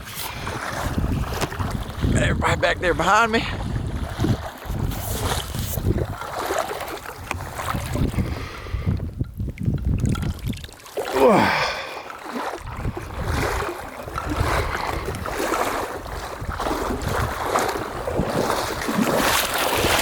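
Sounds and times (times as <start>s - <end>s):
small splashes and scrapes: 0.0s - 2.1s, 4.0s - 8.4s, 9.6s - 11.2s, 11.8s - 20.0s
footsteps wading through water: 0.0s - 2.2s, 3.0s - 20.0s
wind buffeting microphone: 0.0s - 10.7s, 12.5s - 20.0s.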